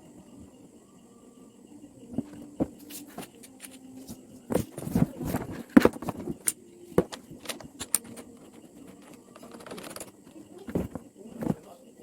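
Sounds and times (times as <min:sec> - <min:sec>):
hard parts clicking and rattling: 0:04.5 - 0:11.6.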